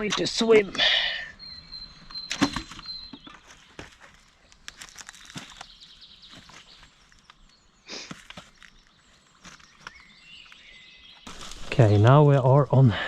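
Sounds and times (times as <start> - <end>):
footsteps rustling through brush: 3.3 - 12.2.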